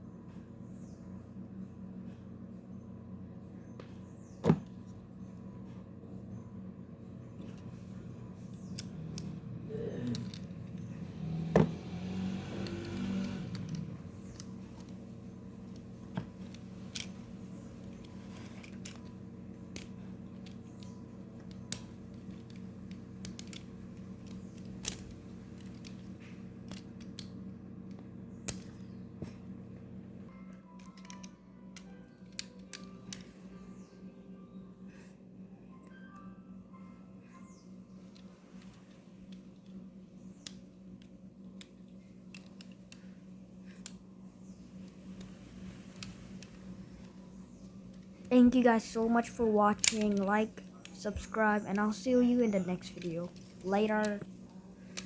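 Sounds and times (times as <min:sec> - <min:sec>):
steady low hum: 0:00.0 - 0:55.0
plastic bricks clicking together: 0:10.0 - 0:10.8, 0:19.7 - 0:27.3, 0:49.7 - 0:54.3.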